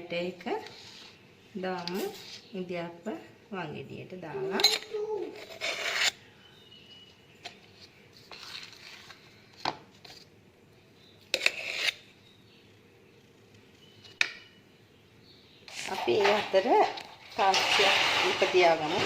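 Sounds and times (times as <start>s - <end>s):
kitchen utensils clinking and scraping: 4.4s - 6.2s, 15.7s - 19.0s.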